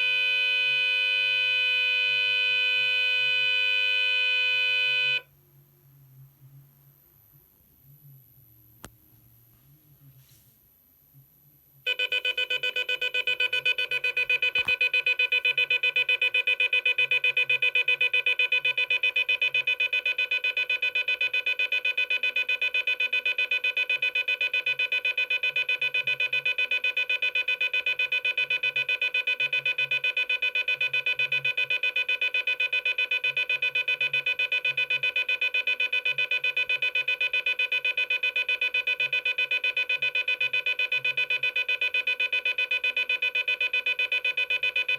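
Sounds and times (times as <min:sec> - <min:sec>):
shrill alarm tone: 0:00.0 - 0:05.2.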